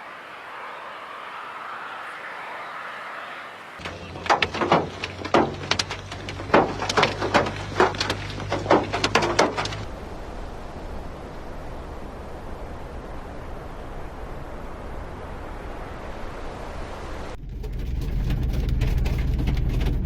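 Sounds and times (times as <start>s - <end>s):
sharp knocks and clatters: 3.8s - 9.9s, 17.4s - 20.0s.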